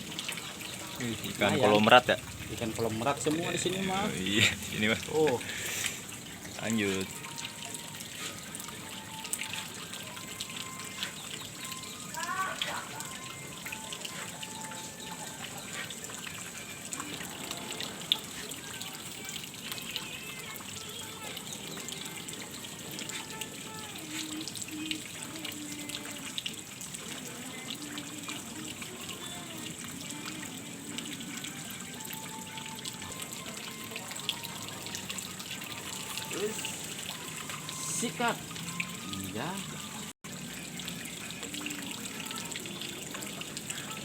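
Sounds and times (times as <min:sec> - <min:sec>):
water trickling: 0:00.0 - 0:44.0.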